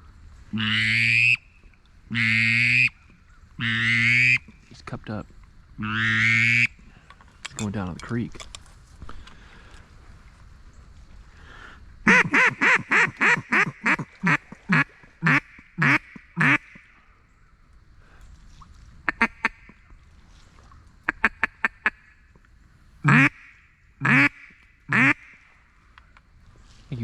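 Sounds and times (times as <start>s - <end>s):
duck call quacking: 0.6s - 1.4s, 2.1s - 3.0s, 3.6s - 4.5s, 5.8s - 6.7s, 12.1s - 16.8s, 19.1s - 19.8s, 21.1s - 22.0s, 23.0s - 25.4s.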